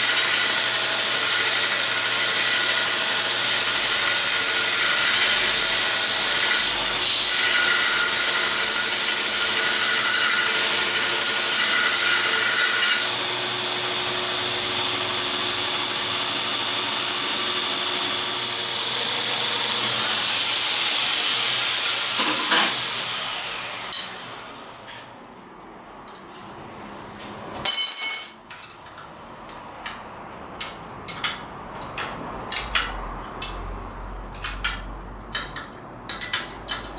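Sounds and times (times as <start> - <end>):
grinder winding down: 0.0 - 24.8
belt grinder hissing: 0.0 - 24.9
clicks of slowing grinder: 21.5 - 23.0.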